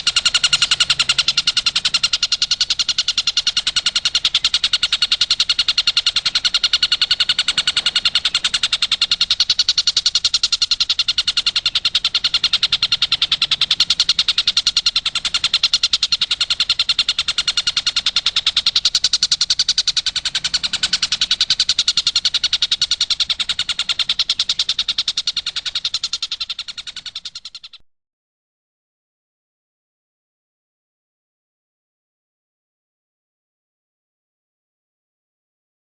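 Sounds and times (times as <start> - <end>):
kingfisher high trill: 0.0 - 27.5.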